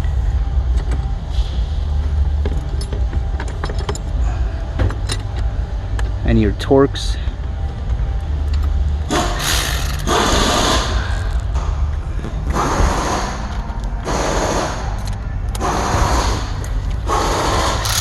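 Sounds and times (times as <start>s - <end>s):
low rumble: 7.2s - 18.0s
screws scraping being driven: 9.1s - 11.5s, 17.1s - 18.0s.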